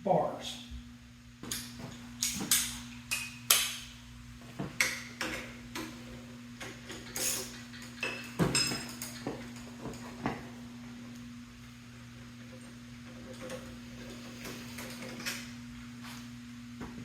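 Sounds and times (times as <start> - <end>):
steady low hum: 0.0 - 17.0
metal tools clinking: 6.9 - 10.1.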